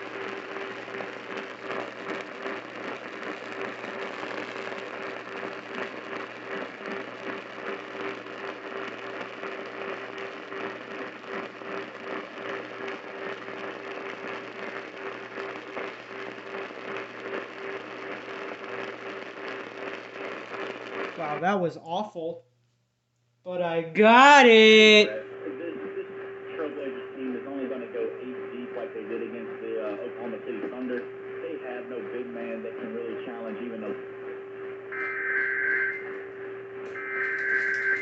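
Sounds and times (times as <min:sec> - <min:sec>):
radio static and crackle: 0:00.0 - 0:22.3, 0:23.5 - 0:38.0
weak distant radio station: 0:23.5 - 0:38.0
steady low whistle: 0:34.6 - 0:38.0.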